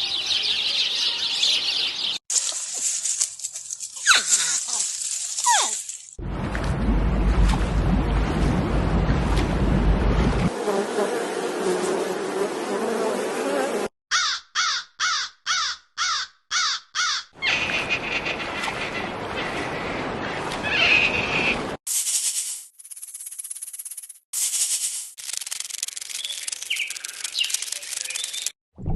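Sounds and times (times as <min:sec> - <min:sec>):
animal calls rising and falling: 0:20.6 - 0:21.6.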